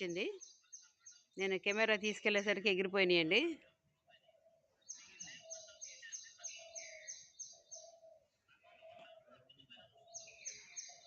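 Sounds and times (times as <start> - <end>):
lower bird calls: 4.1 - 11.0.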